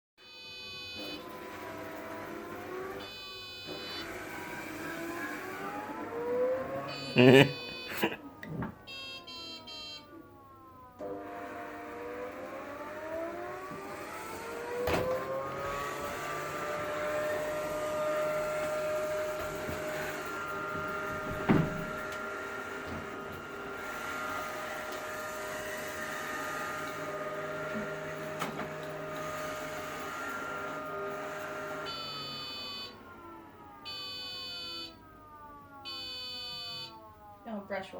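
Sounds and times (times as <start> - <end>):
robot vacuum motor whine: 0.3 - 7.9, 10.4 - 35.0
thump: 21.1 - 21.9.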